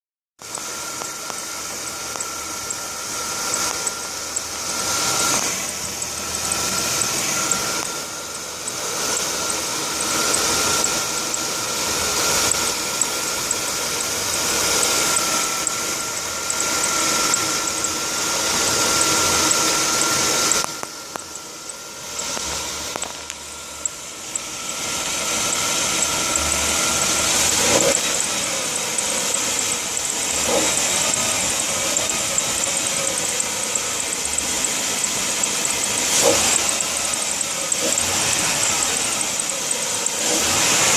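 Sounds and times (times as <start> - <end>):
car engine running: 0.4 - 40.9
drive belt squealing: 0.5 - 40.9.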